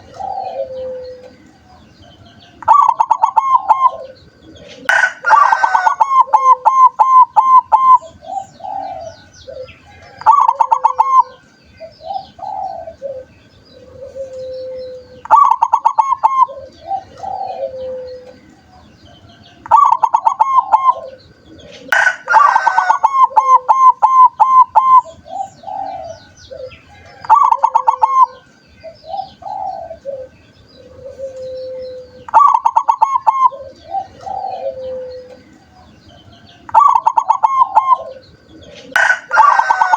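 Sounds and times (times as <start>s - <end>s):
dove cooing: 0.0s - 39.9s
harsh bird call: 2.6s - 11.4s, 19.6s - 30.3s, 36.6s - 39.9s.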